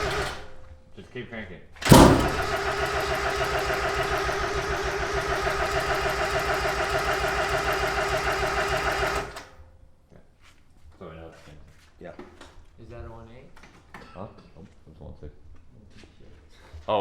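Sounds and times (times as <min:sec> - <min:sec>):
car engine cranking on starter: 0:00.0 - 0:00.6, 0:01.8 - 0:09.6.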